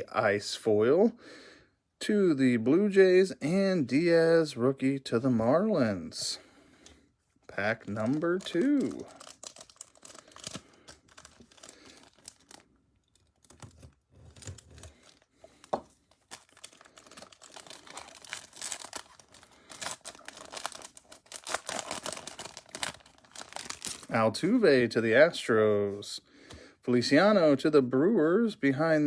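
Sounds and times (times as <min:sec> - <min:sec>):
foil wrapper crinkling: 0:07.5 - 0:24.1.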